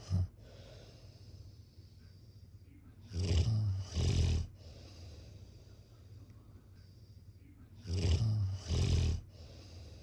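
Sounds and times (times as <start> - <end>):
person snoring: 3.1 - 4.5, 7.8 - 9.2.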